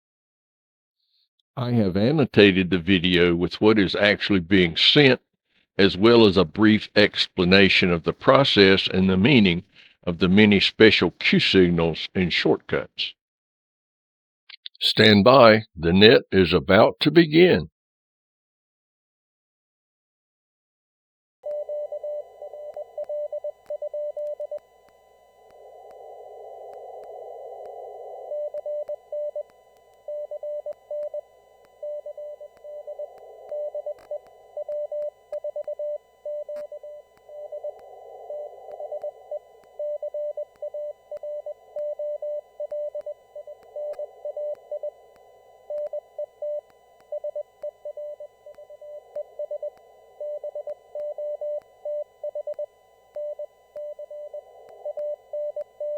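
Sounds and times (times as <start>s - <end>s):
radio band hiss: 14.8s - 15.6s
morse code tone: 21.4s - 55.9s.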